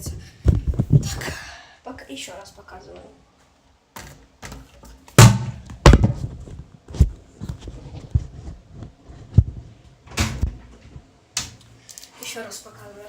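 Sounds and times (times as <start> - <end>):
plastic bottles landing with knocks: 4.0 - 6.2.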